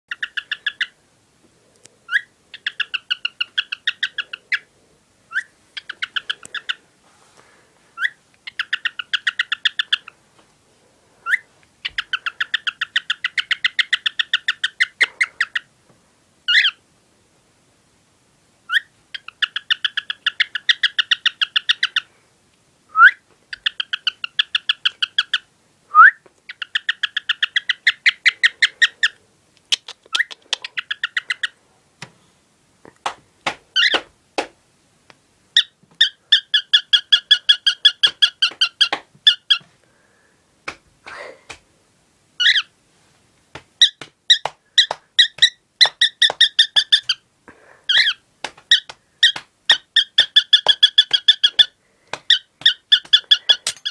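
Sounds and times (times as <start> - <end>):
cockatiel chirping: 0.1 - 1.0, 2.1 - 4.7, 5.3 - 6.8, 8.0 - 10.1, 11.2 - 15.7, 16.5 - 16.8, 18.7 - 22.1, 23.0 - 25.5, 26.5 - 31.6, 33.8 - 34.0, 35.6 - 39.6, 42.4 - 42.7, 43.8 - 47.2, 47.9 - 53.9
bird rising whistle: 25.9 - 26.2.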